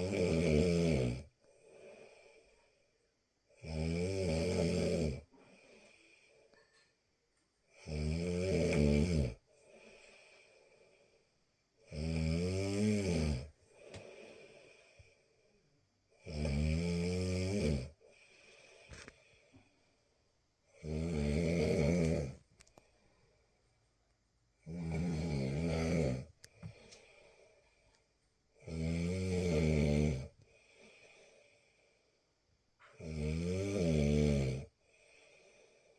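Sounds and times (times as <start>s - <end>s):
person snoring: 0.0s - 2.2s, 3.6s - 5.9s, 7.8s - 9.4s, 11.9s - 15.0s, 16.2s - 19.1s, 20.8s - 22.4s, 24.6s - 27.2s, 28.6s - 31.3s, 32.9s - 35.5s
quiet breaths: 0.0s - 35.9s.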